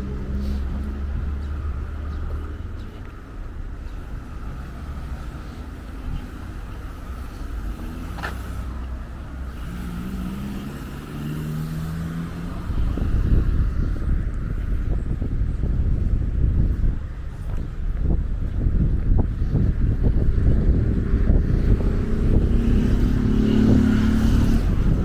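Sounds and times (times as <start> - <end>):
cars passing by: 0.0 - 25.0
wind buffeting microphone: 0.0 - 25.0.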